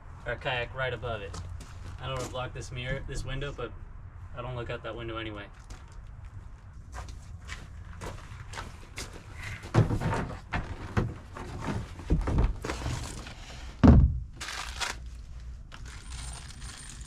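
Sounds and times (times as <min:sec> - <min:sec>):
rustling: 0:14.4 - 0:17.0.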